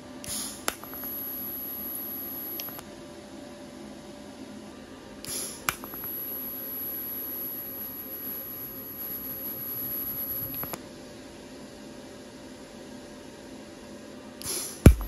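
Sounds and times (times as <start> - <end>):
electrical hum: 0.0 - 15.0
sharp click: 0.2 - 1.1.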